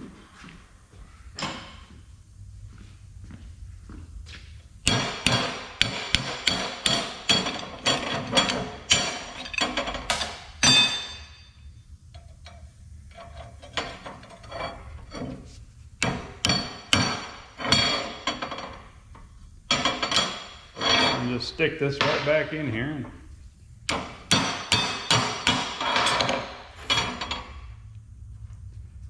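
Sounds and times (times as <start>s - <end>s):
hammer striking steel: 4.8s - 11.3s, 16.0s - 18.8s, 19.7s - 23.2s, 23.9s - 27.5s.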